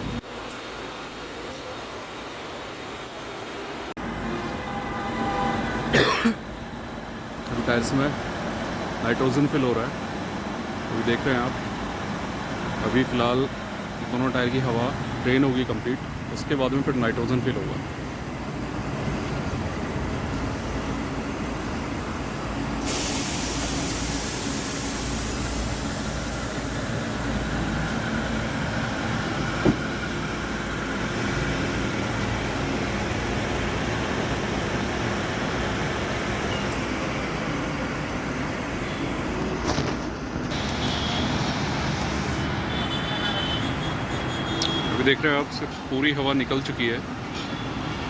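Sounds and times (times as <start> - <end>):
air hissing out of tyres: 20.1 - 30.3, 38.3 - 42.8.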